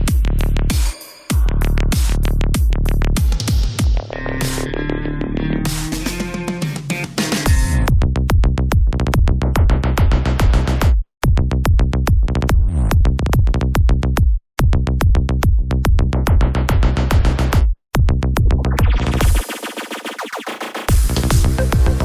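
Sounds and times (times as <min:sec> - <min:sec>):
electronic dance music: 0:05.5 - 0:07.9, 0:18.8 - 0:22.0.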